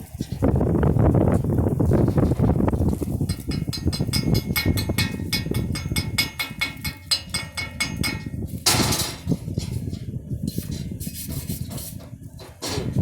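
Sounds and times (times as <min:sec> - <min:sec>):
light metal clatter: 0:01.3 - 0:11.0
chipping hammer rapping steel: 0:03.3 - 0:09.3.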